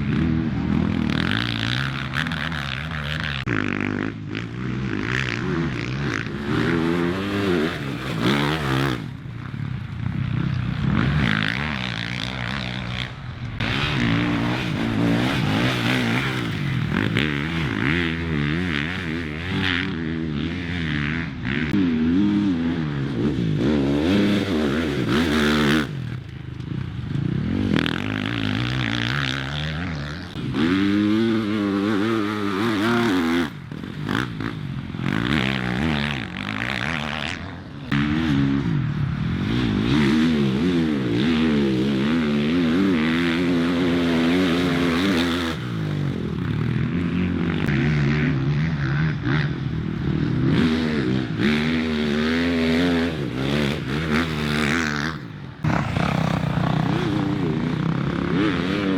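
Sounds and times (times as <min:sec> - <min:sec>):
racing engines revving: 0:55.6 - 0:58.9.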